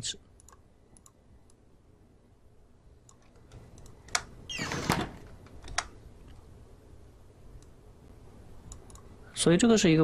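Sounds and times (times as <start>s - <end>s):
mouse clicks: 0.4s - 1.6s, 8.6s - 9.1s
door creaking and shutting: 4.5s - 5.8s.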